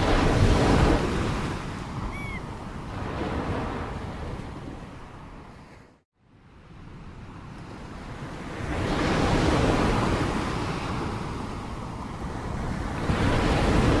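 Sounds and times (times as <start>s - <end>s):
sea waves breaking: 0.0s - 6.0s, 6.6s - 14.0s.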